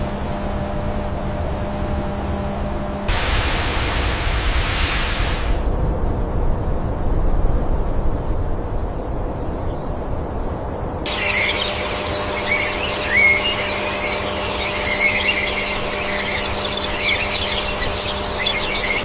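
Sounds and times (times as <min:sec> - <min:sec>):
steady low hum: 0:00.0 - 0:19.0
low rumble: 0:03.1 - 0:08.6
birds chirping and twittering: 0:09.0 - 0:10.5, 0:11.1 - 0:19.0.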